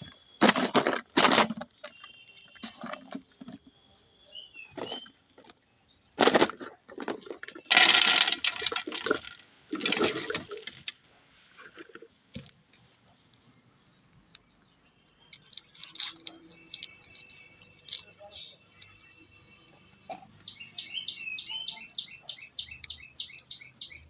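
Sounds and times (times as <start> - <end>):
short high chirps and clicks: 20.4 - 24.0.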